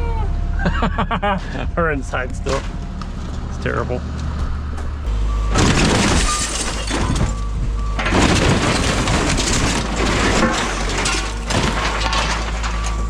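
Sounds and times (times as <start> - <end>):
excavator diesel engine under load: 0.3 - 13.0
building crunching and breaking: 4.8 - 13.0.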